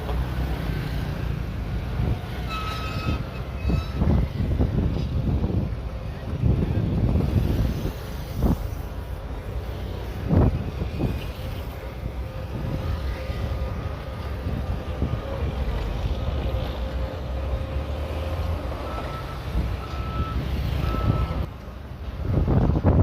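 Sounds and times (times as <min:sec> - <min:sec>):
bulldozer diesel engine rumbling: 0:00.0 - 0:23.0
reversing alarm beeping: 0:18.6 - 0:21.5.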